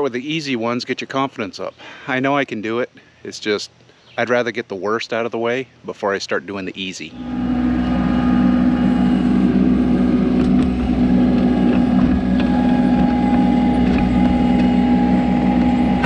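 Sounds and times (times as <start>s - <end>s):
tractor diesel engine running: 7.1s - 16.0s.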